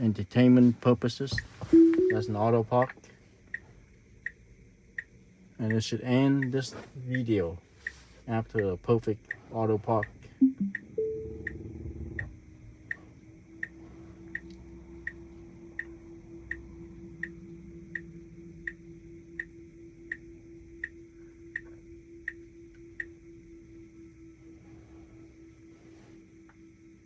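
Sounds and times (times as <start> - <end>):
turn signal ticking: 1.4 - 8.0
low hum: 10.4 - 25.3.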